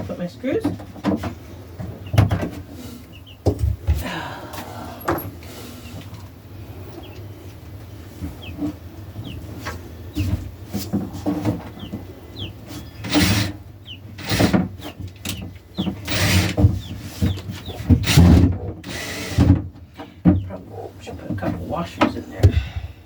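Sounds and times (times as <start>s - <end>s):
baby chicks peeping: 0.0s - 22.6s
wood scraping and rubbing: 9.4s - 15.0s, 15.9s - 19.6s.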